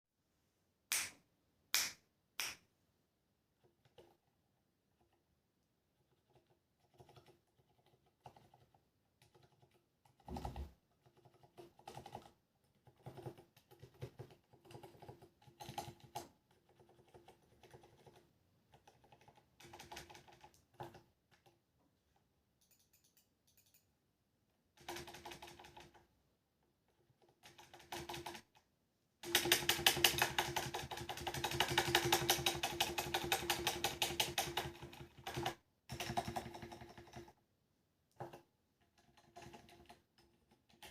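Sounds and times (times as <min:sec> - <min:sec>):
typing on mechanical keyboard: 0:06.0 - 0:21.6, 0:24.8 - 0:26.1, 0:26.9 - 0:28.6, 0:29.2 - 0:37.4, 0:38.1 - 0:40.9.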